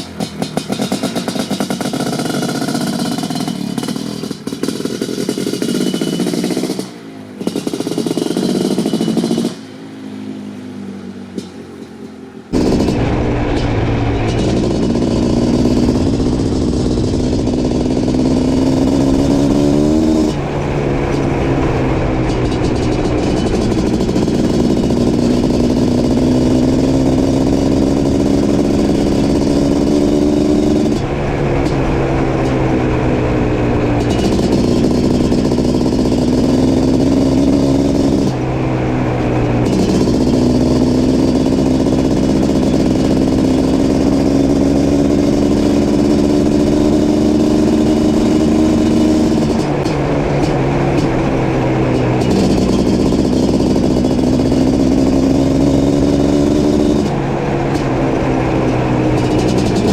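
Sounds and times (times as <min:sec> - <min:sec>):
two-stroke engine revving: 0:00.0 - 0:11.9, 0:12.5 - 0:59.9.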